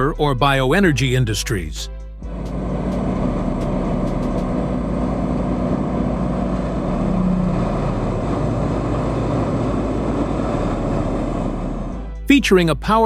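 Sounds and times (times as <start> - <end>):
wood chipper running: 2.3 - 12.2.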